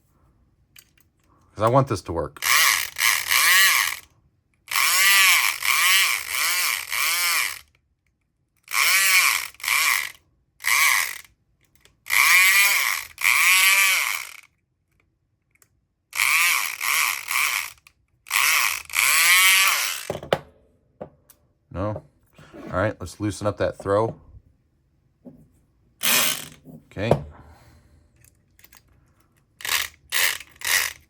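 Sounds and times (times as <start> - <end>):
electric pick gun buzzing: 4.7 - 7.7, 8.7 - 11.2, 12.1 - 14.5, 16.2 - 20.4, 26.0 - 26.6, 29.6 - 31.0.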